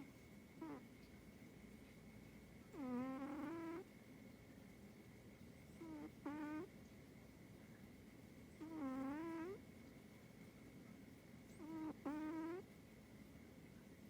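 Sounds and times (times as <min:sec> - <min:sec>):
cat snoring: 0:00.6 - 0:00.8, 0:02.7 - 0:03.9, 0:05.8 - 0:06.7, 0:08.6 - 0:09.6, 0:11.6 - 0:12.7.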